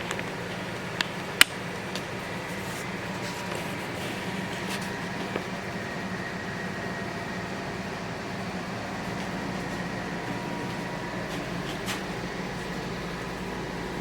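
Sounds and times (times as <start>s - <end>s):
machine humming with whine: 0.0s - 14.0s.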